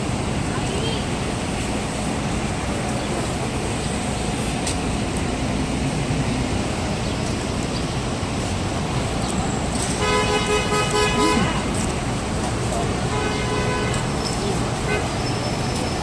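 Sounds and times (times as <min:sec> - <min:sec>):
street traffic rumble: 0:00.0 - 0:16.0
vehicle engines idling: 0:00.0 - 0:16.0.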